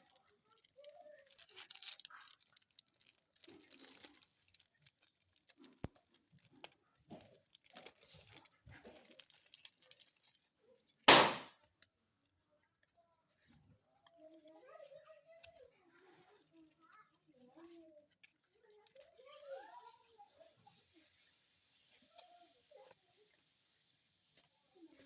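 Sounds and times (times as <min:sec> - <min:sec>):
packaging rustling and crinkling: 0:00.0 - 0:10.6.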